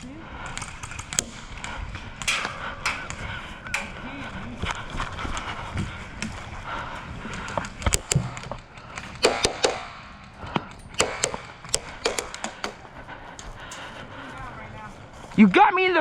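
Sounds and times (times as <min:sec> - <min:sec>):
airsoft guns firing: 0:07.9 - 0:12.8.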